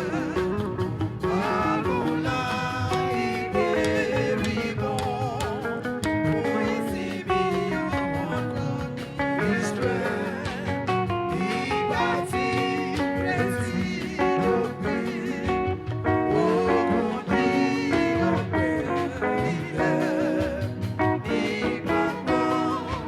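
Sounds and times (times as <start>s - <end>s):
guitar accompaniment: 0.0s - 23.0s
person singing: 0.0s - 23.0s.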